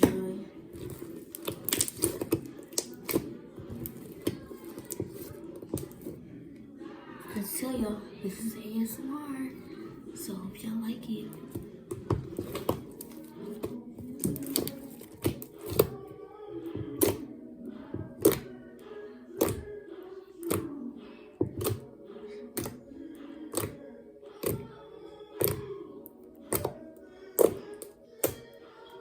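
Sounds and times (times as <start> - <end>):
faint music: 0.0 - 29.0
slime popping and clicking: 0.8 - 6.0, 14.2 - 15.9, 18.2 - 18.5, 19.4 - 19.7, 23.5 - 23.8, 25.4 - 25.6.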